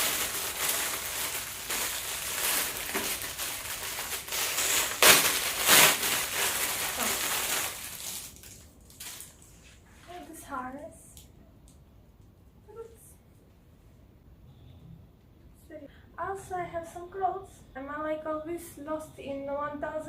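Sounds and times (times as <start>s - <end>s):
packaging rustling and crinkling: 0.0s - 10.1s.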